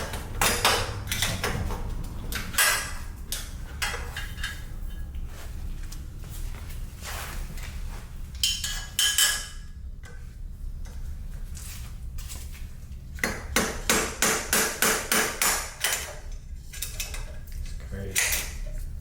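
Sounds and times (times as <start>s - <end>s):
metal tools clanking: 0.0s - 5.1s.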